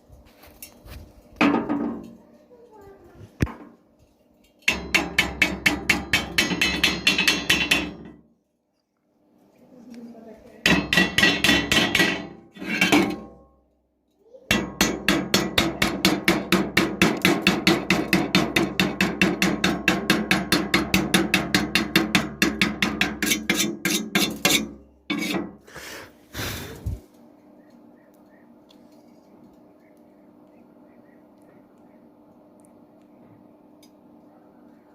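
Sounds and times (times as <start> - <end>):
hammer striking metal: 4.6 - 8.2, 10.6 - 13.4, 14.5 - 25.5.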